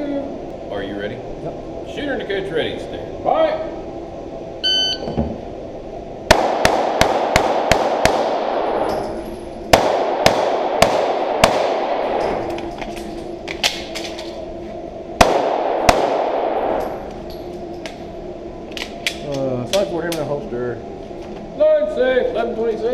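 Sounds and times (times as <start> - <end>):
pistol shots with echo: 6.3 - 8.9, 9.7 - 12.3, 15.2 - 16.8.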